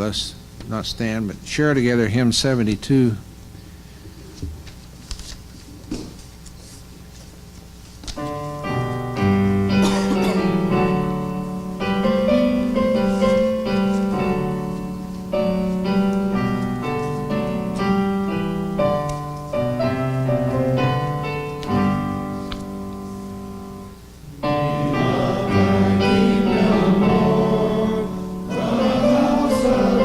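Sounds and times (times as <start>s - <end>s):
piano playing hymn chords: 8.2s - 30.0s.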